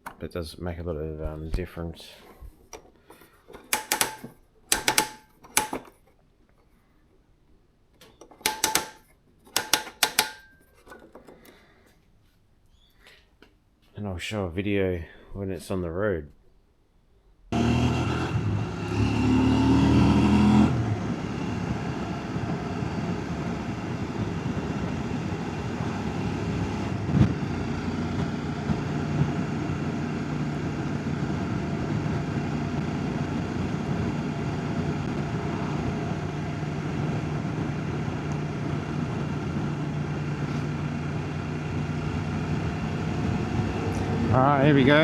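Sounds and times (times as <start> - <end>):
motorcycle engine running: 17.6 - 45.0.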